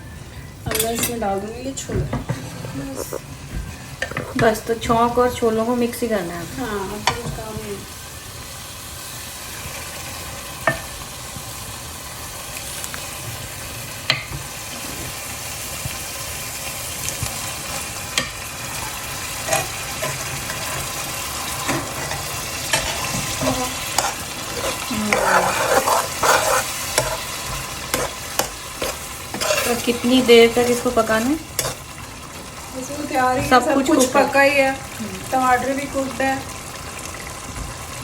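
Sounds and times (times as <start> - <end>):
sizzling in a pan: 0.0 - 38.0
spoon scraping and knocking: 4.0 - 4.5, 21.6 - 30.0.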